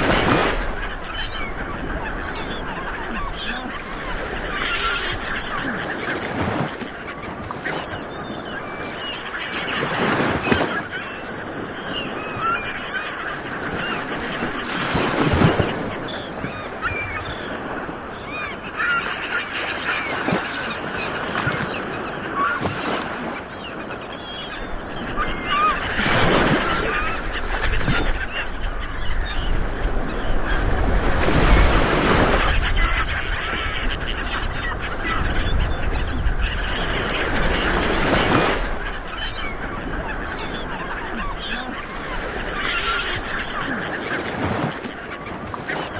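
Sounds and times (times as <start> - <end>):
ocean waves washing in: 0.0 - 7.9
birds calling: 0.0 - 45.9
ocean waves rolling in: 0.0 - 45.9.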